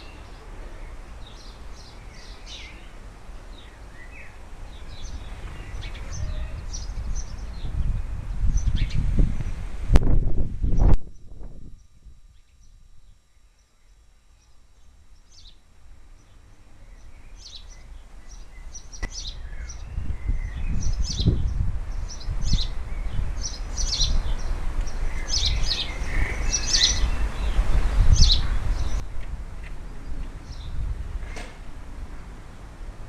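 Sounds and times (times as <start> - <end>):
small birds chirping: 0.0 - 9.6, 10.7 - 29.0, 29.9 - 30.8
low rumbling noise: 0.0 - 33.0.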